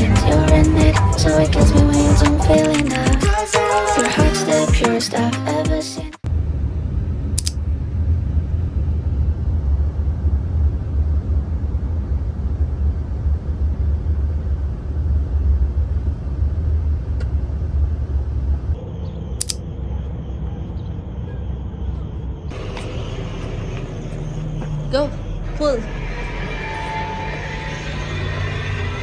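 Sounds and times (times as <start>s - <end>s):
low rumble with hiss: 6.3s - 20.0s, 20.9s - 29.0s.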